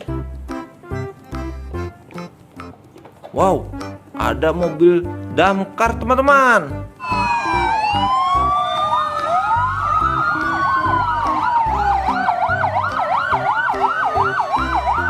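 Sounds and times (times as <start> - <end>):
background music with steady beat: 0.0 - 15.0
fast siren yelp: 7.0 - 15.0
sirens wailing: 7.0 - 15.0.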